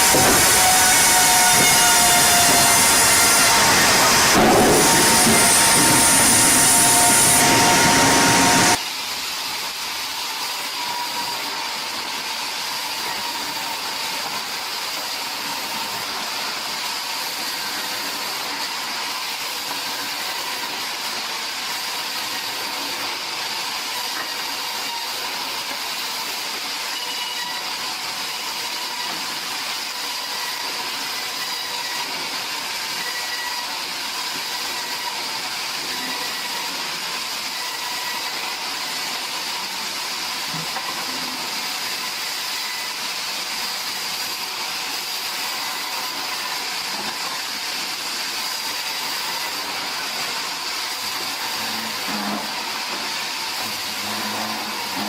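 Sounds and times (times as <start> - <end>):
sawmill machinery running: 0.0 - 55.0.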